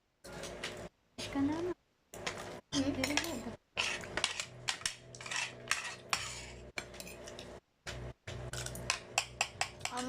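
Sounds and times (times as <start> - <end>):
cutlery clinking and scraping on plate: 3.0 - 7.5.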